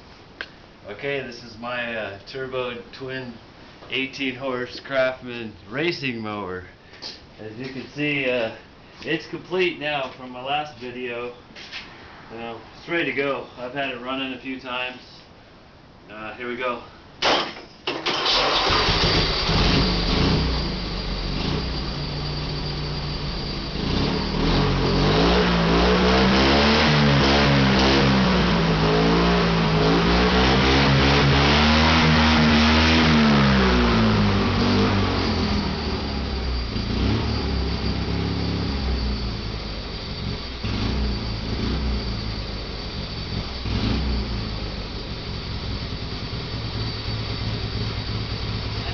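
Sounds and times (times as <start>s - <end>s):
mower engine cranking: 17.2s - 19.6s
mower engine running and revving: 18.3s - 48.9s.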